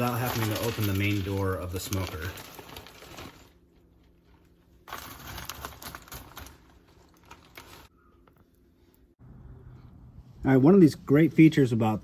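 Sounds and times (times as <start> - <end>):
wood chips clicking and rustling: 0.0 - 3.6, 4.8 - 7.9.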